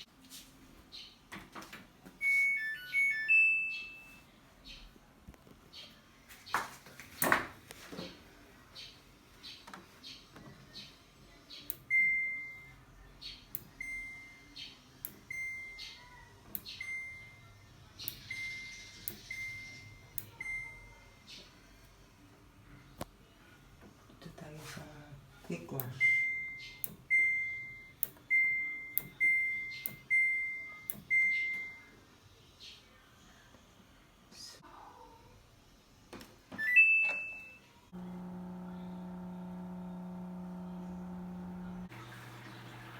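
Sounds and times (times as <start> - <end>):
washing machine short beep: 2.2 - 4.2, 11.8 - 12.8, 13.7 - 14.6, 15.3 - 16.0, 16.8 - 17.5, 18.1 - 21.1, 25.9 - 31.9, 36.6 - 37.7
control panel click: 28.0 - 30.2.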